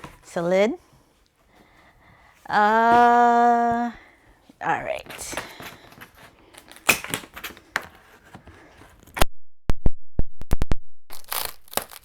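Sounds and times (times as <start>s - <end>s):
packaging rustling: 5.0s - 9.2s, 11.1s - 12.0s
cardboard box being handled: 7.7s - 9.1s.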